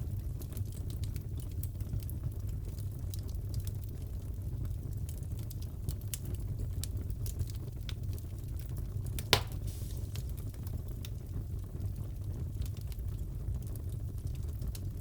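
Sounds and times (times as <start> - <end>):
low fire rumble: 0.0 - 15.0
wood fire crackling: 0.0 - 15.0
sharp fire pop: 9.2 - 10.4.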